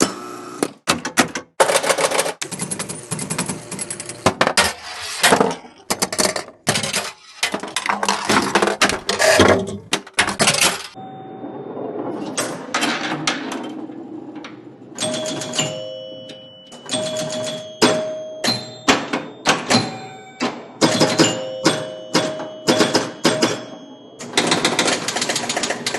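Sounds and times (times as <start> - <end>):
pinball machine clicks and knocks: 0.8 - 11.0, 12.3 - 25.9
ball rolling rumble: 10.9 - 16.8
faint held tone: 11.0 - 12.4.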